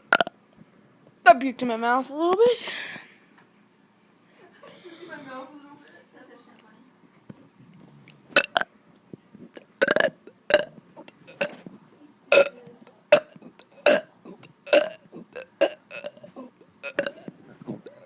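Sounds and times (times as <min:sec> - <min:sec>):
child burping: 0:09.8 - 0:11.6, 0:12.3 - 0:18.0.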